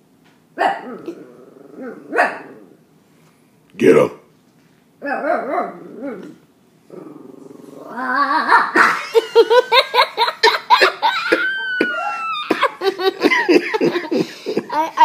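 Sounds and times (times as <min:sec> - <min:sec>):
dog barking and yelping: 0:00.6 - 0:02.8, 0:05.0 - 0:06.4
dog whining: 0:00.6 - 0:02.8, 0:05.0 - 0:08.8
people laughing: 0:08.3 - 0:14.9.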